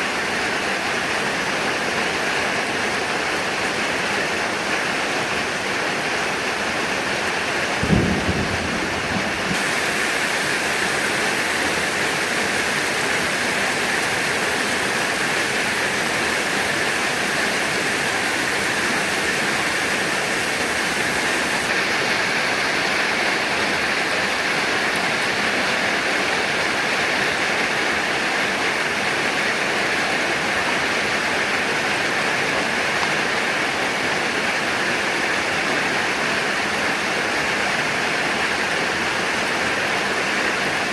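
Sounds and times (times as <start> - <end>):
heavy rain falling: 0.0 - 40.9
low rumble of thunder: 7.8 - 10.0.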